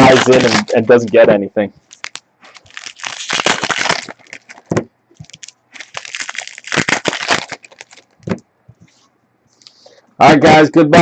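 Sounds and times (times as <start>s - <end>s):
wrapper tearing and crinkling: 0.0s - 1.2s, 1.8s - 8.4s.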